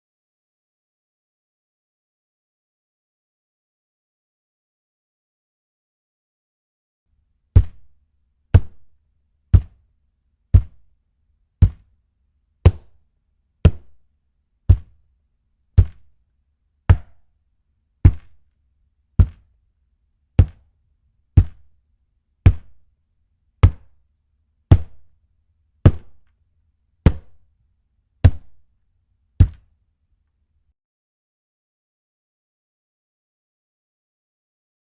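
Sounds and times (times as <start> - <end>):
hand punching plastic surface: 7.6 - 8.0, 8.6 - 8.9, 9.6 - 9.8, 10.6 - 10.9, 11.6 - 12.0, 12.6 - 13.0, 13.6 - 14.0, 14.7 - 15.0, 15.8 - 16.2, 16.9 - 17.3, 18.0 - 18.4, 19.2 - 19.5, 20.4 - 20.7, 21.4 - 21.8, 22.4 - 22.8, 23.6 - 24.0, 24.7 - 25.1, 25.9 - 26.3, 27.0 - 27.4, 29.4 - 29.7.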